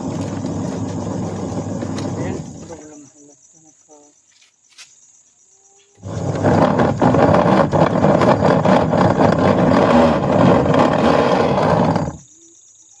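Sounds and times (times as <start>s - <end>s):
washing machine rattling: 0.0s - 2.8s.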